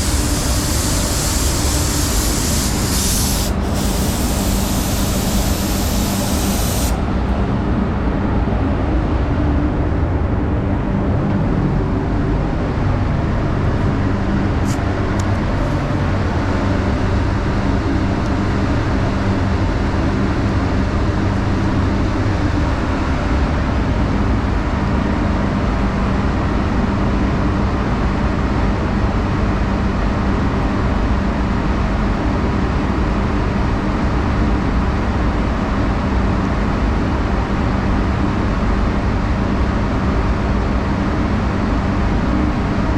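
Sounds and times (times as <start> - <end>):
paint spray gun hiss: 0.0 - 7.2
machine hum: 0.0 - 7.6.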